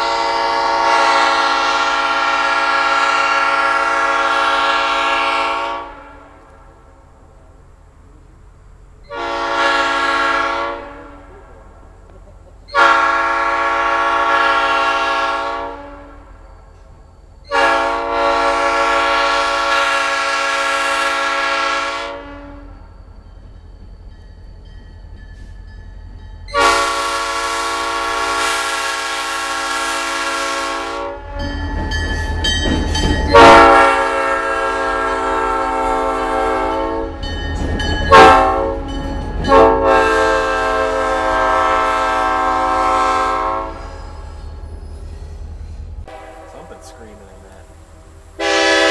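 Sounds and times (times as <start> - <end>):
locomotive air horn chord: 0.0 - 6.4, 9.1 - 11.4, 12.7 - 16.3, 17.5 - 22.8, 26.5 - 31.6, 33.3 - 37.2, 38.1 - 38.9, 39.5 - 44.1, 46.0 - 48.9.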